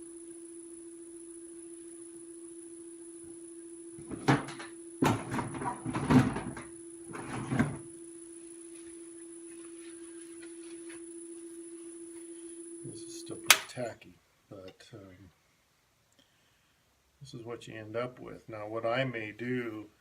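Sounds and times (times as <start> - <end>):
faint high whine: 0.0 - 15.3
steady hum: 0.0 - 20.0
objects knocking and clattering: 4.0 - 7.8.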